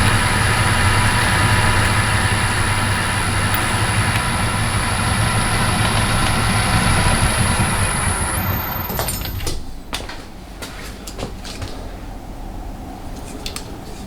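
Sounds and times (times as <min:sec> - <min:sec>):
lathe running with high whine: 0:00.0 - 0:09.4.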